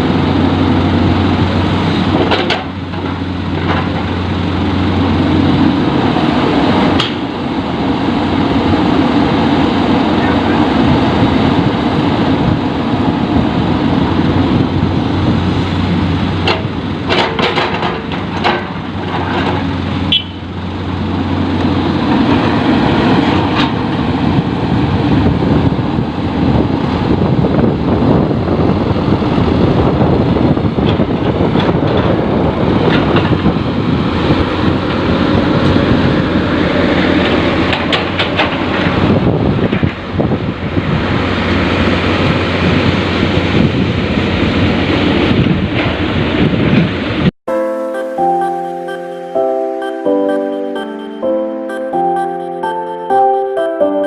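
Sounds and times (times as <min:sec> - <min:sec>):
diesel machinery engine hum: 0:00.0 - 0:54.0
knocks and clatter: 0:02.1 - 0:04.2, 0:16.4 - 0:19.8, 0:30.8 - 0:33.5, 0:37.1 - 0:40.0.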